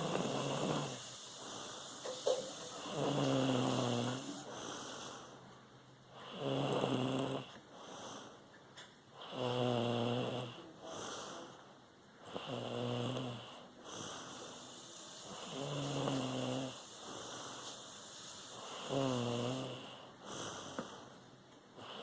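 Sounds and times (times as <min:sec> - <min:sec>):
loud rattling snores: 0:00.0 - 0:04.5, 0:06.2 - 0:07.5, 0:09.2 - 0:10.6, 0:12.3 - 0:13.5, 0:14.3 - 0:17.0, 0:18.4 - 0:20.0
soft breaths: 0:00.0 - 0:22.0.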